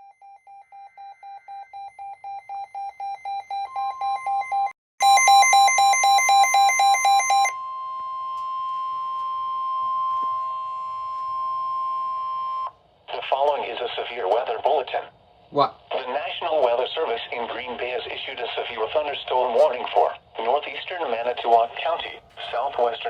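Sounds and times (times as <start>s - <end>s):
steady alarm tone: 0.0s - 12.7s.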